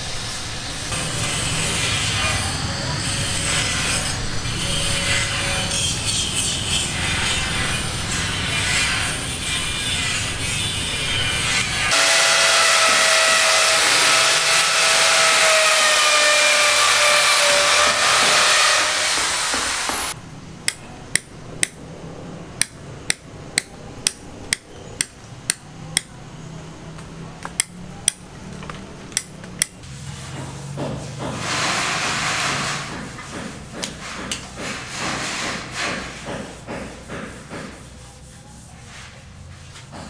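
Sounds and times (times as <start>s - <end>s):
power tool whining: 11.6s - 20.2s
hammer strikes: 11.6s - 21.8s, 22.6s - 26.2s, 27.4s - 28.2s, 29.1s - 38.0s.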